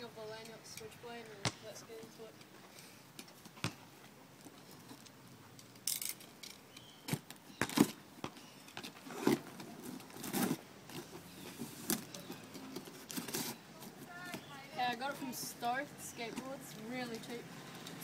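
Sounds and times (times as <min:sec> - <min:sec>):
cardboard box rustling: 0:09.0 - 0:14.5.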